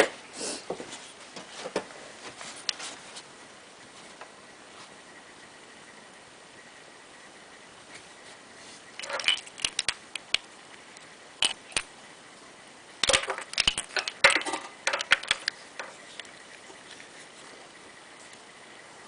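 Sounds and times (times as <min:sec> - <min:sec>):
metal tools clinking and clattering: 0:09.0 - 0:09.7.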